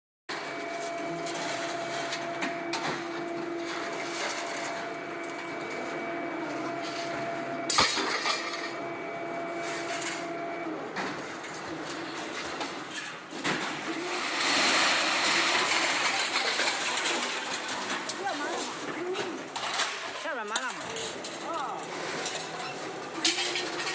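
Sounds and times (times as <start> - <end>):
hydraulic unit whine: 0.3 - 11.0
machine clanks and knocks: 14.8 - 23.9.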